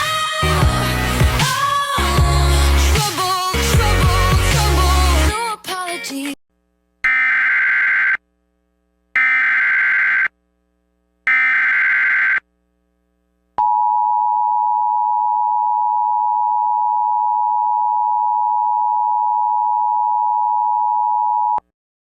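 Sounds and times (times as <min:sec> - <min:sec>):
buzzing data tones: 0:09.2 - 0:10.4.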